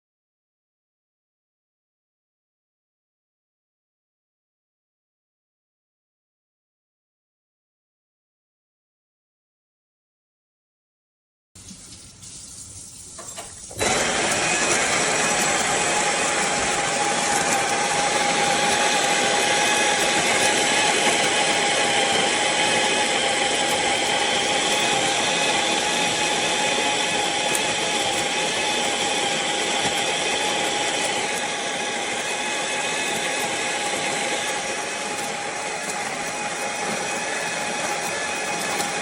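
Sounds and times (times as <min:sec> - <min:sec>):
coffee grinder motor whine: 0:13.2 - 0:39.0.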